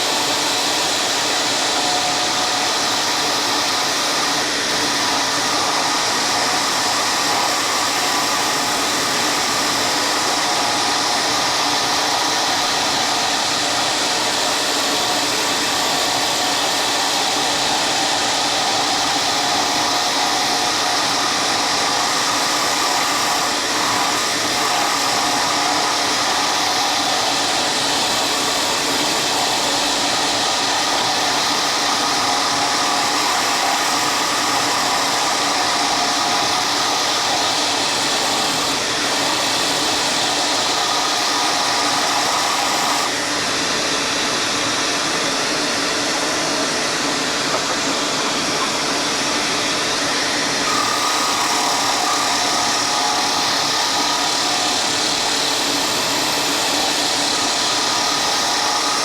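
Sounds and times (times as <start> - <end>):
woodworking machine motor whir: 0.0 - 59.0.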